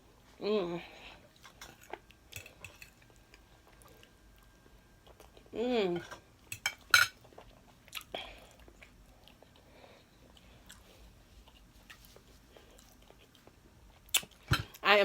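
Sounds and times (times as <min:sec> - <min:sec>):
close chewing: 0:07.2 - 0:14.4.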